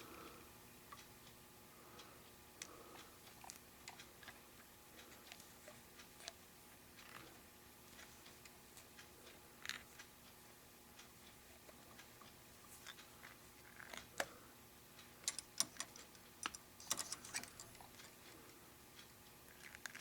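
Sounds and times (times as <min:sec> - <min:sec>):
small clicks and taps: 0:15.2 - 0:18.4.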